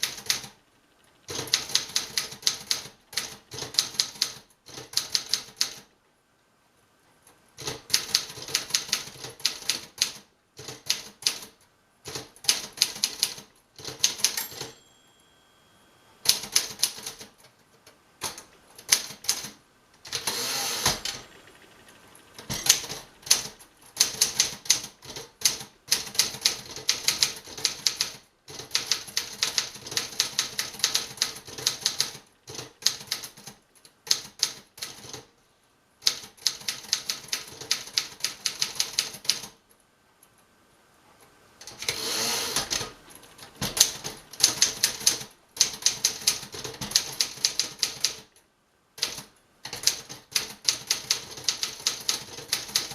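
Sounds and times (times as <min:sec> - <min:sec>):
typewriter key strikes: 0:12.1 - 0:14.8
typewriter margin bell ringing: 0:13.9 - 0:17.0
typewriter carriage return sliding: 0:20.1 - 0:21.2, 0:41.6 - 0:45.1.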